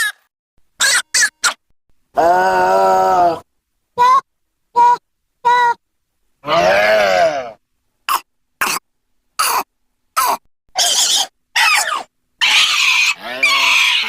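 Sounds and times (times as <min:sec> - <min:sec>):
vocal grunts and coughs: 0:08.1 - 0:10.5.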